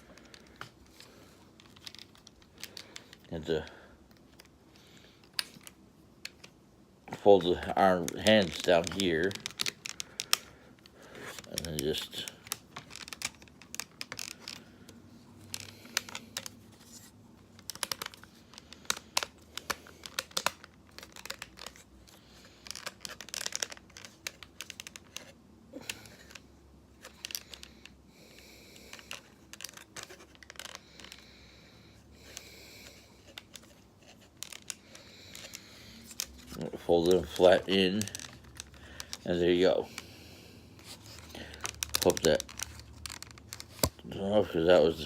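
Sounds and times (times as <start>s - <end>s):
plastic parts clicking and snapping: 0.0s - 4.6s, 5.2s - 31.3s, 32.2s - 40.1s, 40.8s - 44.8s.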